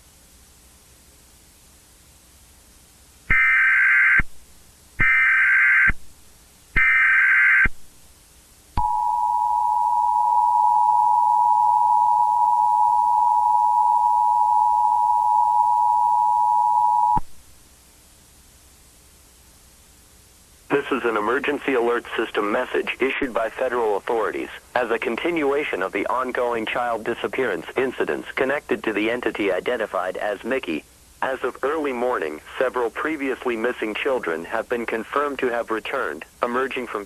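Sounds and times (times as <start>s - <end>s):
data bursts: 8.8s - 17.2s
two-tone attention signal: 8.8s - 17.2s.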